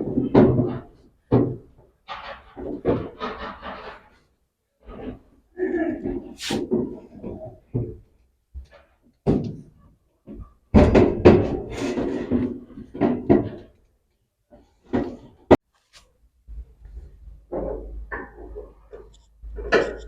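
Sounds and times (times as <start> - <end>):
dryer parts knocking and clattering: 0.0 - 4.2, 6.0 - 13.8.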